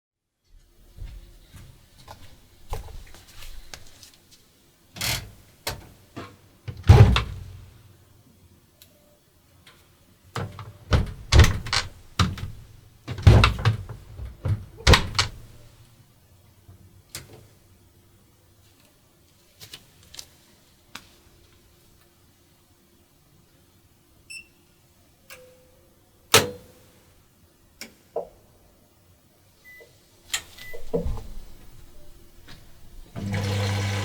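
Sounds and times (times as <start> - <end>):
washing machine thunks and clicks: 6.7 - 7.6, 10.4 - 15.6, 30.6 - 31.5.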